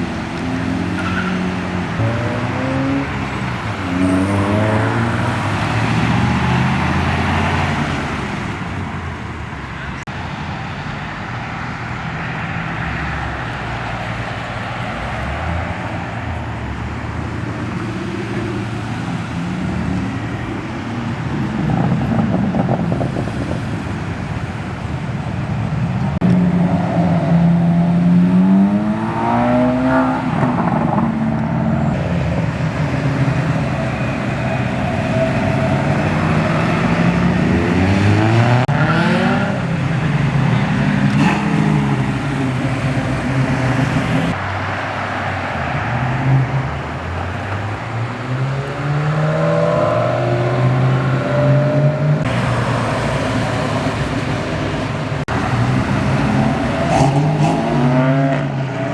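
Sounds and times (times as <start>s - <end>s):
car accelerating: 0.0s - 8.8s, 26.2s - 58.9s.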